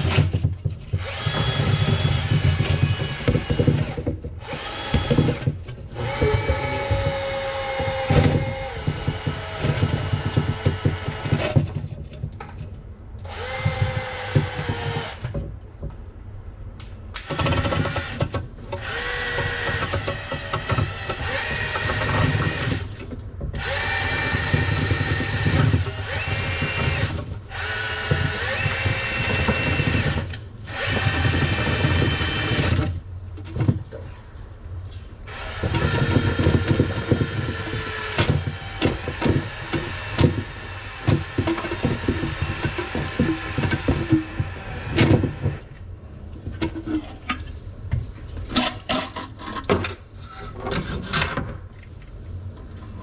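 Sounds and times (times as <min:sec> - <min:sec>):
drain auger motor whining: 0:00.0 - 0:11.6, 0:23.6 - 0:32.9, 0:35.4 - 0:45.7.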